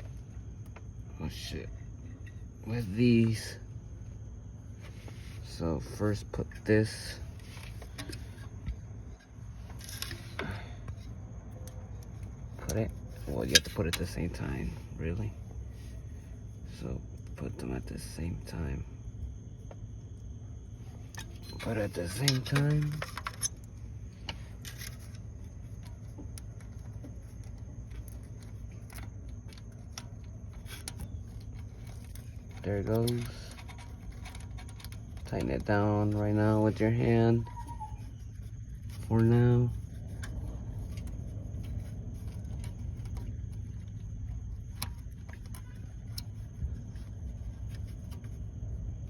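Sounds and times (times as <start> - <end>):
steady low hum: 0.0 - 49.0
steady low rumble: 0.0 - 49.0
metal clicks and scrapes: 7.4 - 14.5, 21.1 - 36.8.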